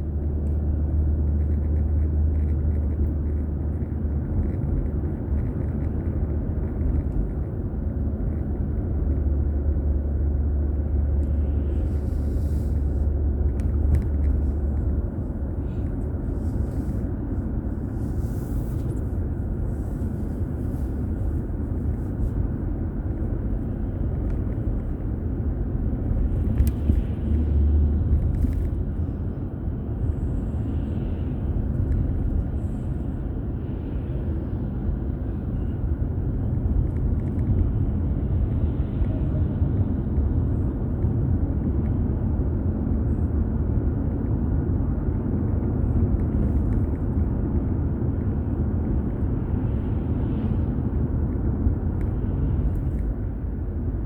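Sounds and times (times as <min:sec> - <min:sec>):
car engine and tyres rumbling: 0:00.0 - 0:54.0.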